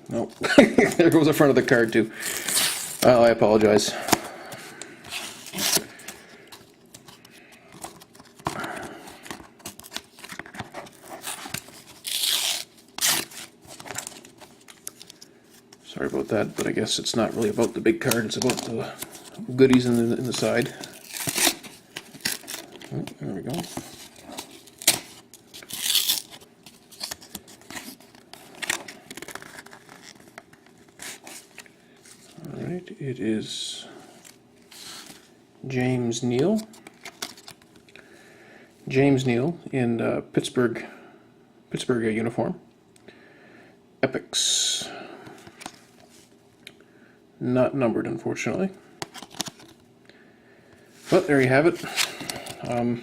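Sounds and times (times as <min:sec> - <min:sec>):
foil pouch ripping and crinkling: 0:02.1 - 0:03.2, 0:05.1 - 0:15.3, 0:17.3 - 0:31.7.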